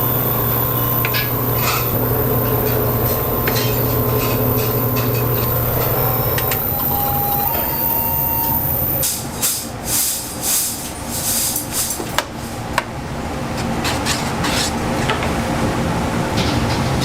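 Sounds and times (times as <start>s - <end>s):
thin held tone: 0.0s - 9.2s
machine hissing: 0.0s - 12.0s.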